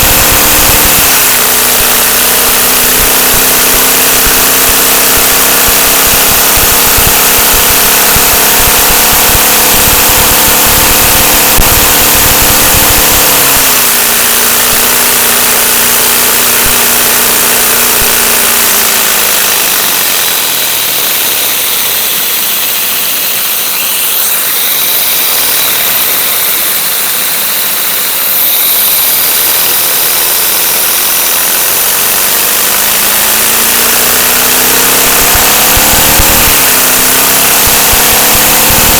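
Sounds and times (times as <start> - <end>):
model engine whirring: 0.0 - 38.9
rushing air hiss: 0.0 - 38.9.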